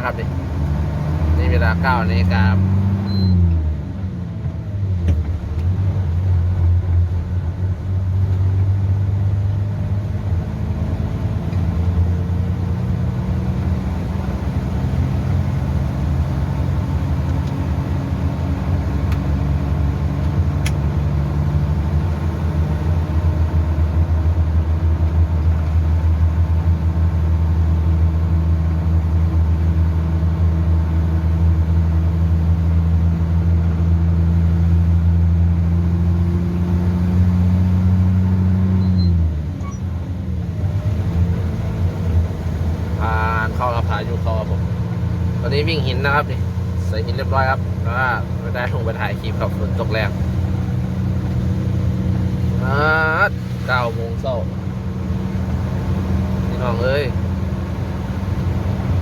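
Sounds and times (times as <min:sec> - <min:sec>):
diesel truck engine droning: 0:00.0 - 0:59.0.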